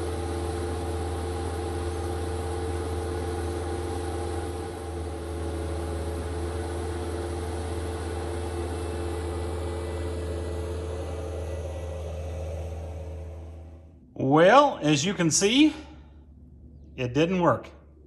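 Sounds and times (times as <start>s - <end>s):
diesel engine idling: 0.0s - 18.0s.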